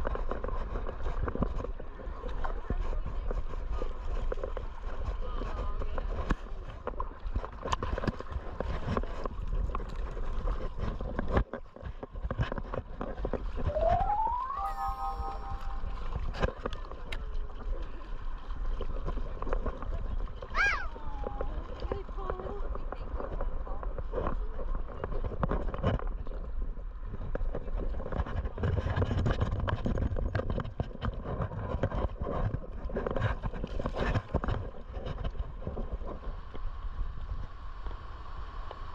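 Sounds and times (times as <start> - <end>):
wind rumbling on microphone: 0.0 - 38.9
rising electronic tone: 13.7 - 16.4.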